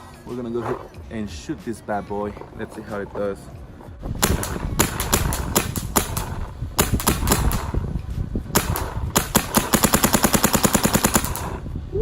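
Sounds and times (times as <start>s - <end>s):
paintball marker firing: 4.2s - 8.0s, 8.6s - 11.7s.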